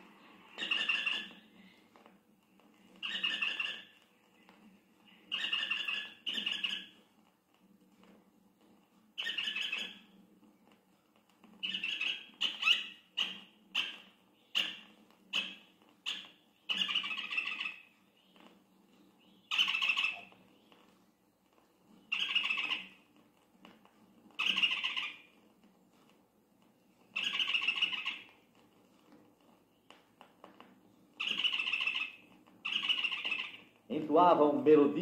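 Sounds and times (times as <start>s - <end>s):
bird harsh squawking calls: 0.5s - 1.5s, 3.0s - 4.0s, 5.2s - 7.0s, 9.2s - 10.1s, 11.6s - 17.9s, 19.3s - 20.4s, 22.1s - 23.0s, 24.4s - 25.3s, 27.2s - 28.4s, 31.2s - 33.8s.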